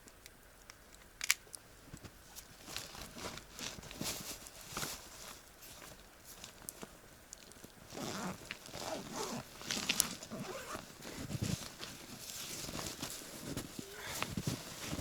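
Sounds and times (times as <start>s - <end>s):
rustling and crunching in snow: 2.3s - 7.1s, 7.8s - 15.0s.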